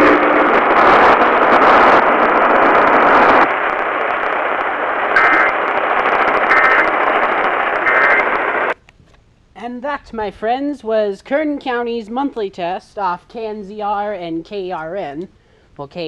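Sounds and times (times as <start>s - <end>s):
hissing radio static: 0.0s - 8.8s
data tone bursts: 6.5s - 6.9s.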